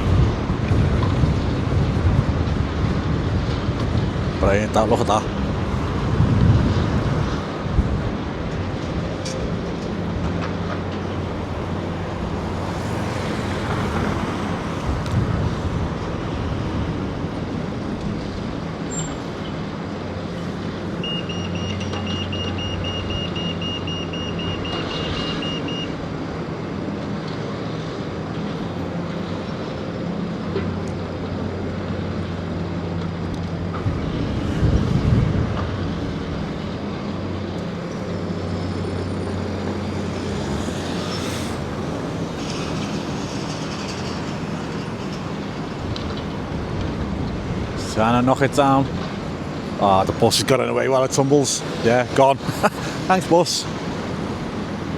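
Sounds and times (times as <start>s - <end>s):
diesel engines running: 0.0s - 54.9s
road traffic: 0.0s - 54.9s
vehicle passing: 10.5s - 17.5s, 33.9s - 47.9s
reversing alarm beeping: 21.0s - 26.0s.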